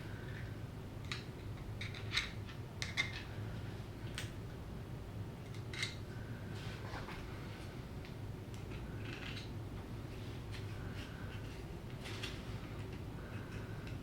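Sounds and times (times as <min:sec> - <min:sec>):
steady low hum: 0:00.0 - 0:14.0
small parts clicking and tapping: 0:00.3 - 0:03.3.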